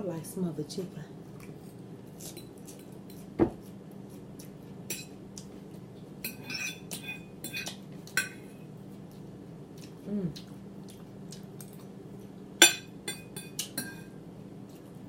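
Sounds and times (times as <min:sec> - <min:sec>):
fork clinking on a plate: 0:06.2 - 0:08.4, 0:12.6 - 0:14.1.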